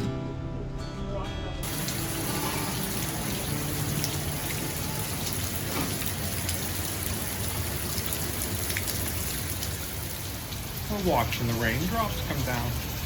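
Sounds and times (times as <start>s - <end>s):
heavy rain: 1.6s - 13.0s.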